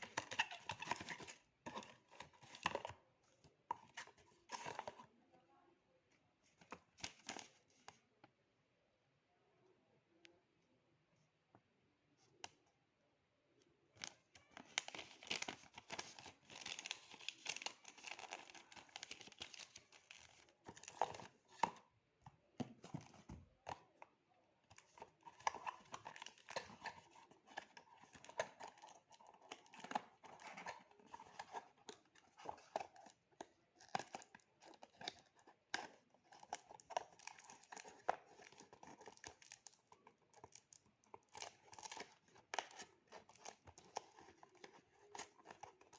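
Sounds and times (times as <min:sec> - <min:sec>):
packaging being torn and crinkled: 0:35.8 - 0:45.9.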